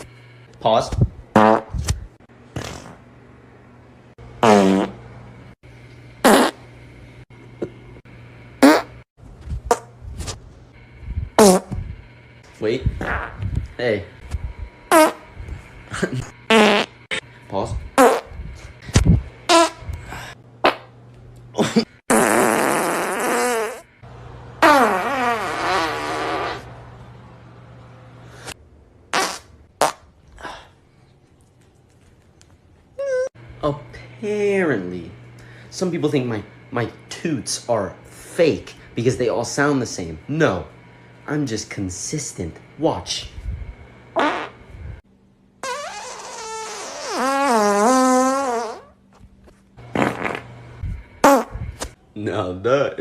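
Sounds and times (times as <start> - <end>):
short farts: 1.3 - 2.0, 4.4 - 5.0, 6.2 - 6.6, 8.6 - 9.0, 9.6 - 9.9, 11.4 - 11.8, 13.0 - 13.5, 14.9 - 15.3, 16.5 - 17.2, 18.0 - 18.4, 19.0 - 19.9, 22.1 - 23.9, 24.6 - 26.7, 28.4 - 30.1, 44.2 - 44.6, 45.6 - 49.0, 49.8 - 50.5, 51.2 - 52.0
long wavering farts: 22.1 - 23.9, 24.6 - 26.7, 45.6 - 49.0, 49.9 - 50.5.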